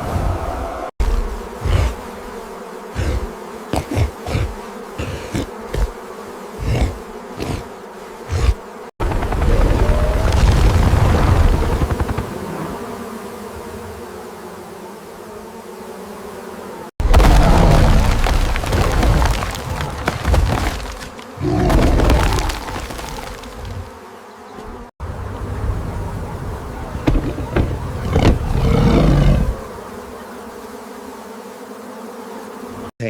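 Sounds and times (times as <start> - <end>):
bees buzzing: 0.0 - 33.0
heavy thumps: 26.9 - 29.6.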